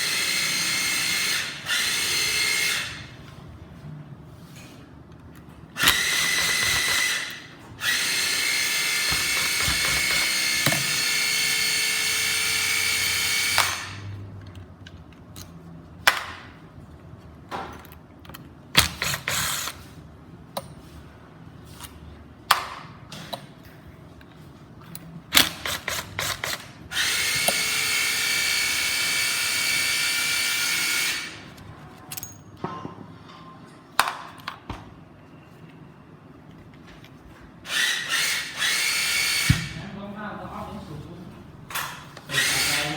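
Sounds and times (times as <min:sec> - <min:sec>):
angle grinder motor whine: 0:05.8 - 0:11.8
clicks and knocks handling tool: 0:09.0 - 0:11.0.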